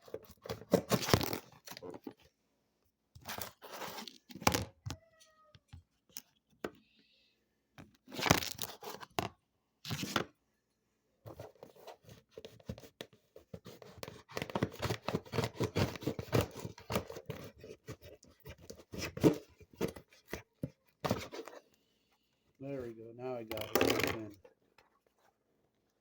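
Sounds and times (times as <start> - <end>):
parcel tearing and scratching: 8.1 - 9.2, 13.5 - 20.4.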